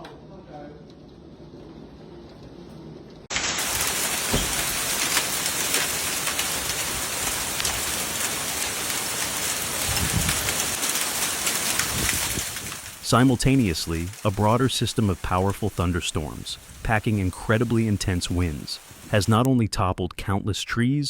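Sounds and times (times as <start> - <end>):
heavy rain pouring: 3.2 - 19.5
low thud: 4.3 - 4.7.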